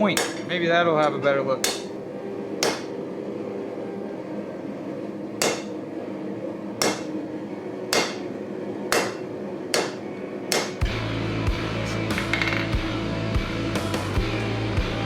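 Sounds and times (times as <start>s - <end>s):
hammer striking steel on anvil: 0.0s - 0.5s, 1.6s - 2.0s, 2.6s - 3.0s, 5.4s - 5.8s, 6.8s - 7.2s, 7.9s - 8.3s, 8.9s - 10.9s, 12.1s - 12.7s
steady low hum: 0.0s - 15.0s.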